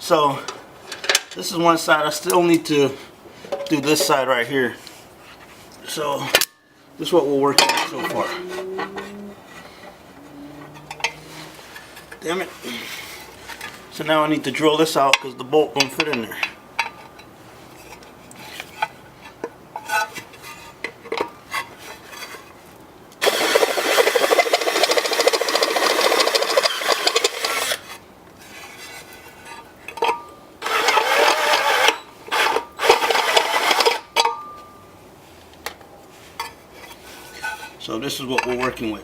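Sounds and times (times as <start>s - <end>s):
power drill drilling metal: 23.2s - 27.9s, 30.6s - 34.0s.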